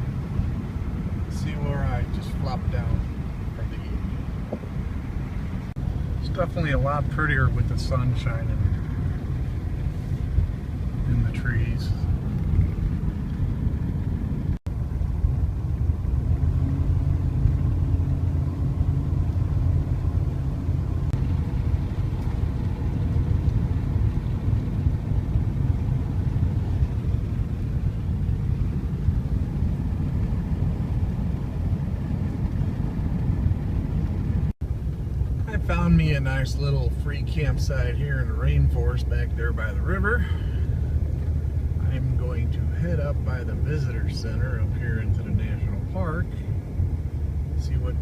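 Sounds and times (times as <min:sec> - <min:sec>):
vehicle engine and road noise: 0:00.0 - 0:48.0.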